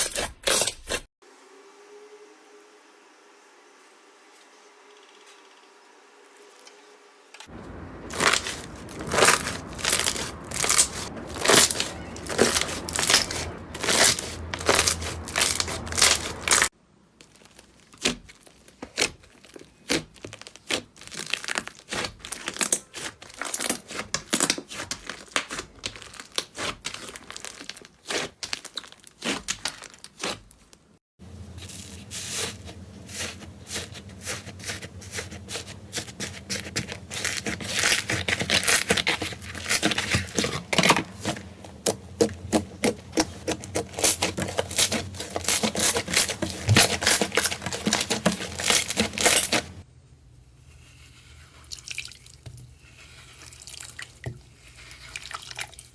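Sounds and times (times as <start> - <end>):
slime crackling and popping: 8.1 - 30.7.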